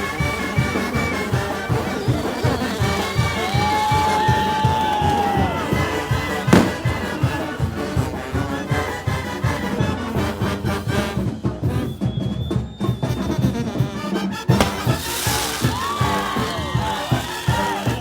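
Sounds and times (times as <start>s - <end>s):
brass band playing: 0.0s - 4.5s, 5.4s - 11.7s, 13.5s - 18.0s
sharp bang: 6.6s - 7.1s, 14.6s - 15.4s.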